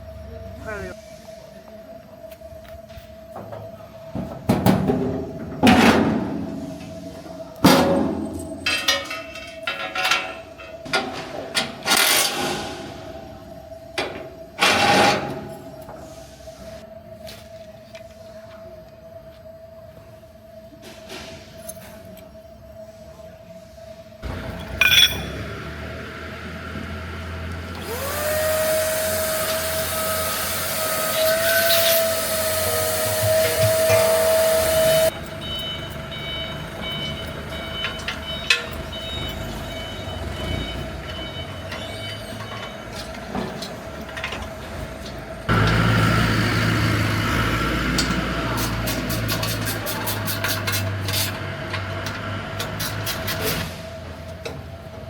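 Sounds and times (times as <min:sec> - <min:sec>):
machine whine with hiss: 0:00.0 - 0:51.4
machinery clatter and hum: 0:00.0 - 0:55.0.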